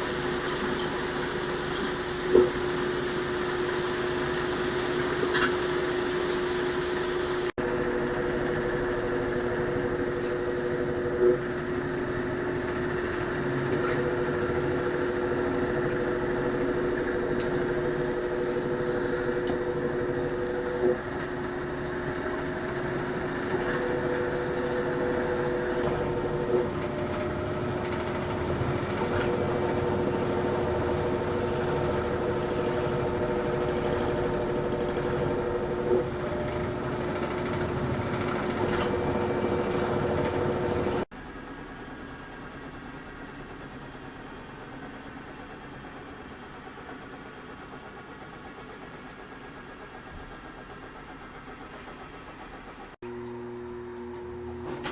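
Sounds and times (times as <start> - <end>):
washing machine humming: 0.0 - 54.9
constant pitched whine: 1.8 - 41.1.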